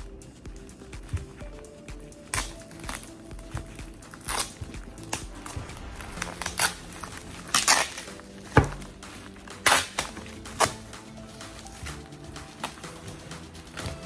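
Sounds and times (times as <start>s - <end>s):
soft background music: 0.0s - 14.0s.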